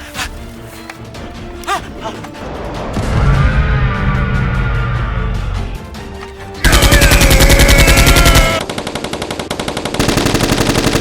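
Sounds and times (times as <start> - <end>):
background music: 0.0 - 9.9
machine-gun fire: 6.7 - 11.0.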